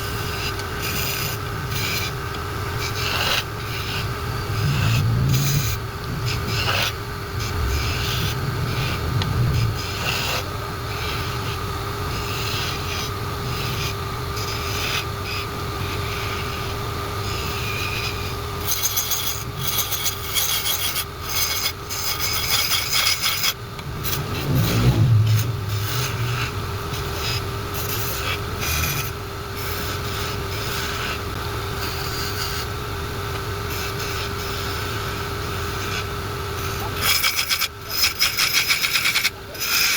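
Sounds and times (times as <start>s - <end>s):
wood lathe humming: 0.0s - 19.9s
tool rasping on spinning wood: 0.0s - 32.8s, 33.7s - 39.9s.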